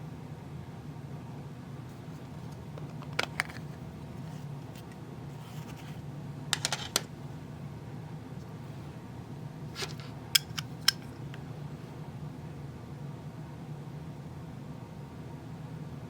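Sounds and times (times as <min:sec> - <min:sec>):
steady low hum: 0:00.0 - 0:15.6
small sharp clicks of parts: 0:09.8 - 0:11.4.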